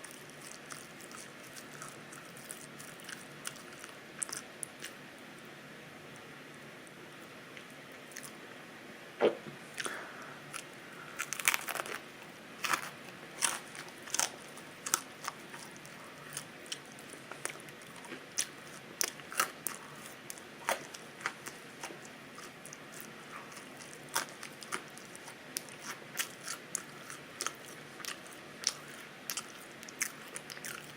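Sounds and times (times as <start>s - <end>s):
crunchy open-mouthed chewing: 0.0s - 5.0s, 7.5s - 8.4s, 9.2s - 30.9s
loud bites on crisp crust: 11.2s - 15.4s.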